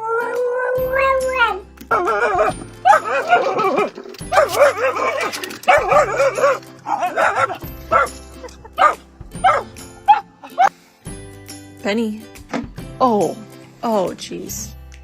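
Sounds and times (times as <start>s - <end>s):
background music: 0.0s - 15.0s
dog barking and yipping: 1.9s - 10.7s.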